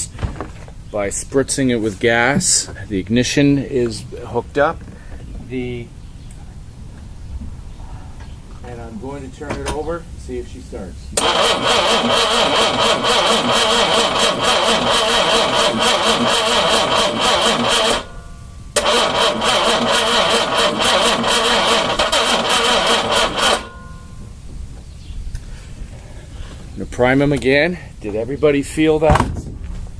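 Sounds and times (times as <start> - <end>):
starter motor cranking engine: 11.2 - 18.2, 18.8 - 23.8.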